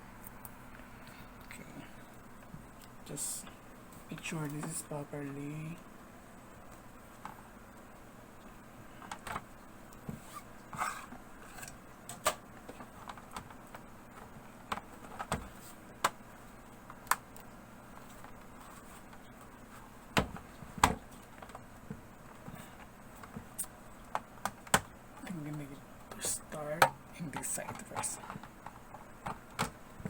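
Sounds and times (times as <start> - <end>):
clicks and taps of laptop parts: 24.1 - 24.9, 26.8 - 29.8.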